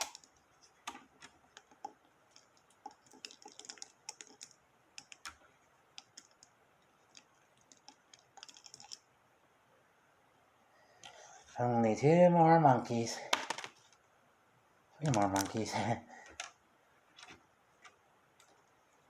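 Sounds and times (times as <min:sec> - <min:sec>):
plastic toys clicking together: 0:00.0 - 0:05.4, 0:07.1 - 0:09.0.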